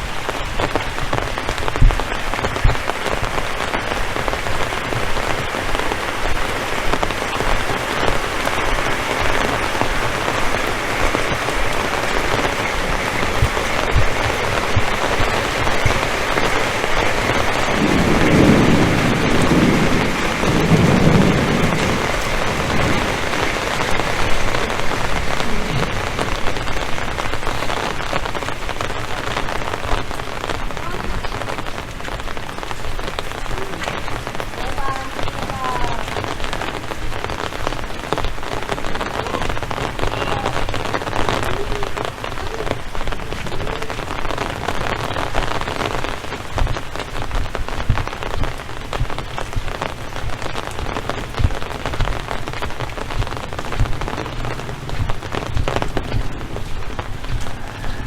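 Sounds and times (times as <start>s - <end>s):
heavy rain: 0.0s - 58.0s
low rumble: 53.1s - 58.0s.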